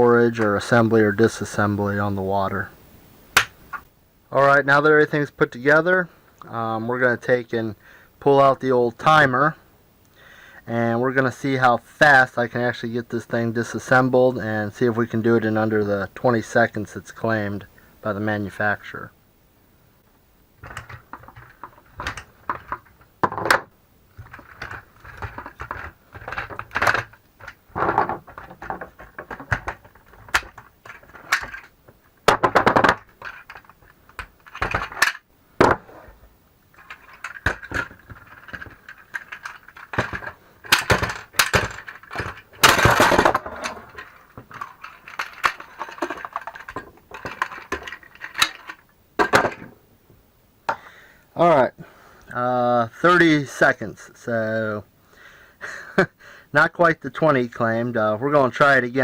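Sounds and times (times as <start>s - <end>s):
trolley parts clicking and clattering: 36.7s - 49.7s.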